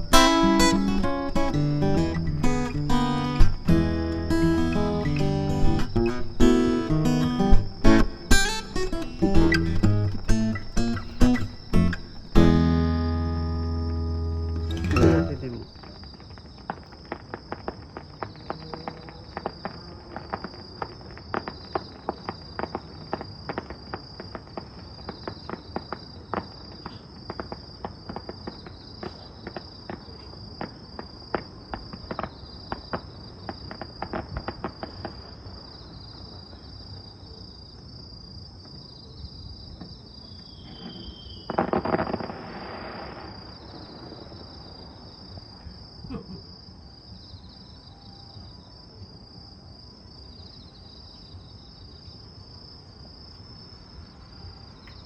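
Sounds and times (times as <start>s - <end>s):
crickets chirping: 0.0s - 55.0s
short falling whistle: 40.4s - 41.6s
sharp irregular crackles: 41.3s - 44.6s.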